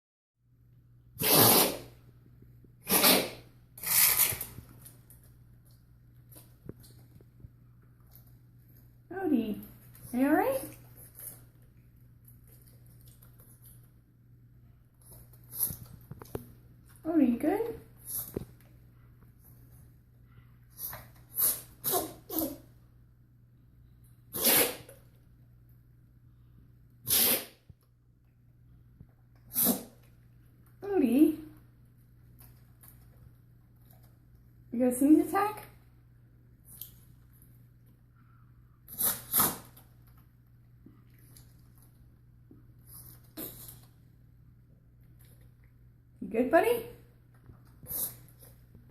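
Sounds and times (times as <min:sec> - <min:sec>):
pet sneezing: 0:01.2 - 0:02.0, 0:02.8 - 0:04.6, 0:20.7 - 0:22.6, 0:24.3 - 0:25.1, 0:27.0 - 0:27.6, 0:29.4 - 0:30.1, 0:38.9 - 0:39.8, 0:42.9 - 0:43.9, 0:47.8 - 0:48.6.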